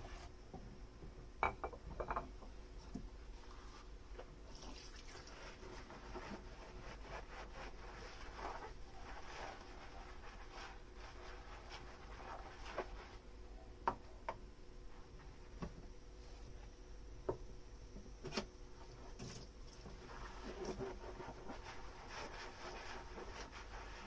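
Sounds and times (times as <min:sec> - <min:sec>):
dishes clinking: 0:01.4 - 0:02.4.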